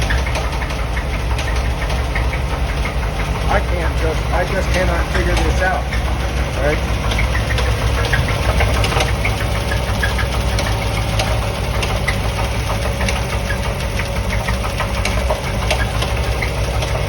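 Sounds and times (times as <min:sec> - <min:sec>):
car engine idling: 0:00.0 - 0:17.0
engine knocking and ticking: 0:00.0 - 0:17.0.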